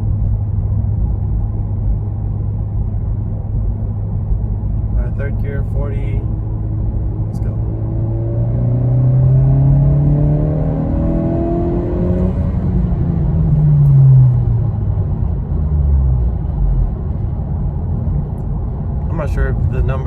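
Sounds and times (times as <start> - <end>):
car engine accelerating hard: 4.8 - 20.0.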